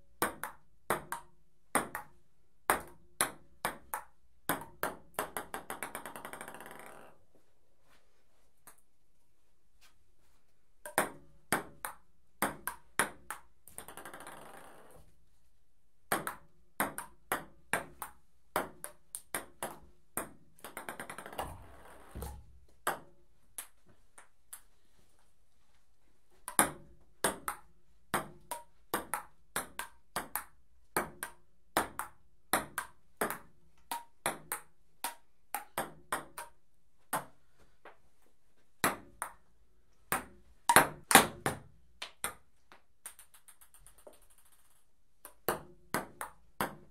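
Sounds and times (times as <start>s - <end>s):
ping pong ball on paddle and table: 0.2s - 7.2s, 10.8s - 15.0s, 16.1s - 24.7s, 26.4s - 37.4s, 38.8s - 39.5s, 40.1s - 46.9s
ball bouncing to rest: 21.3s - 23.0s.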